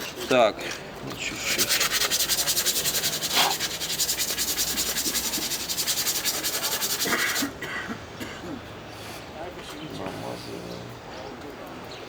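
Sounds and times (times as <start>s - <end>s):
hand scraping on brake parts: 1.2s - 7.6s.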